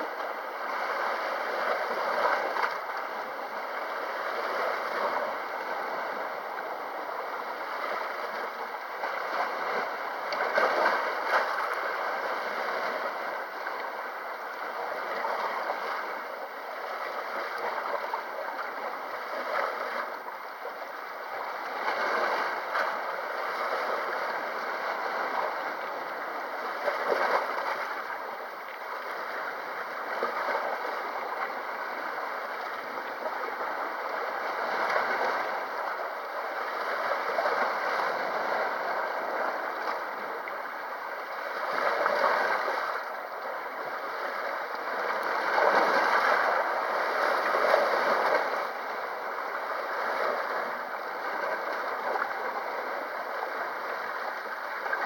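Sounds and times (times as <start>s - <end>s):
sea waves washing on shore: 0.0s - 55.0s.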